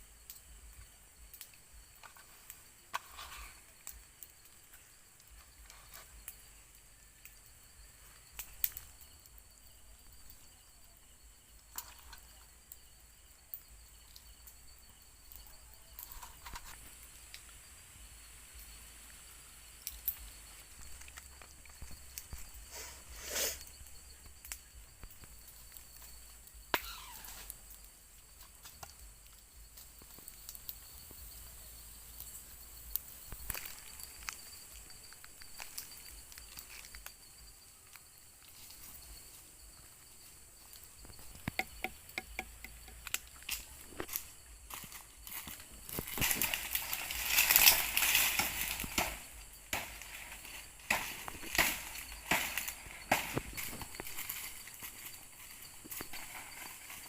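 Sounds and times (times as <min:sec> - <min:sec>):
crickets trilling: 0:00.0 - 0:57.0
rustling: 0:40.2 - 0:57.0.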